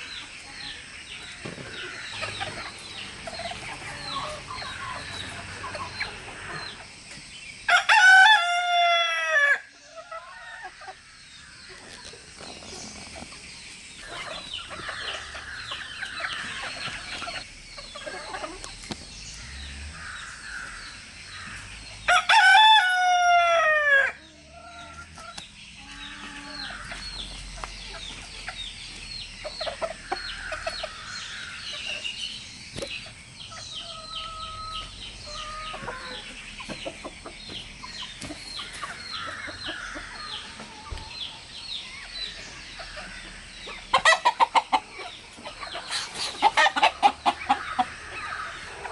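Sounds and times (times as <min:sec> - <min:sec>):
rooster crowing: 0:07.7 - 0:09.7, 0:22.1 - 0:24.9
chickens clucking softly: 0:11.7 - 0:19.0, 0:32.7 - 0:48.9.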